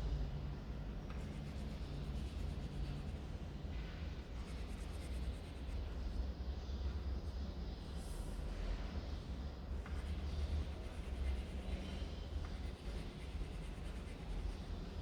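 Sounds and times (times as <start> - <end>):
steady low hum: 0.0 - 15.0
colouring strokes on paper: 10.0 - 15.0.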